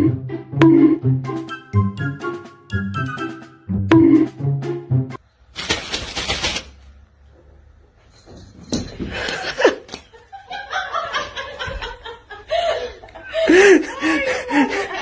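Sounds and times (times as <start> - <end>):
person laughing: 11.2 - 15.0.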